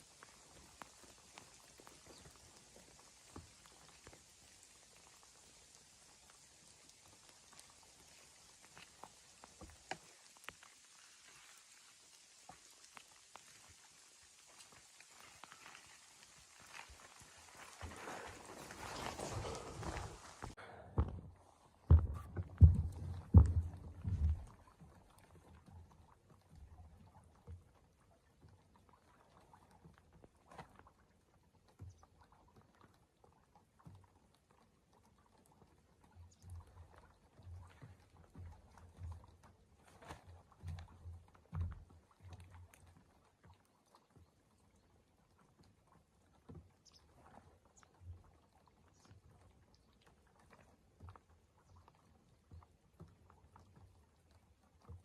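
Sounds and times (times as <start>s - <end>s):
faint hiss: 0.0s - 20.6s.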